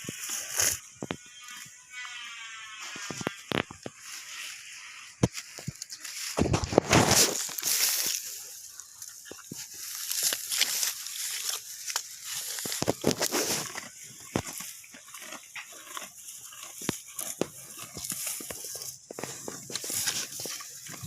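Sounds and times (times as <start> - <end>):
domestic animal calling: 1.1 - 3.7.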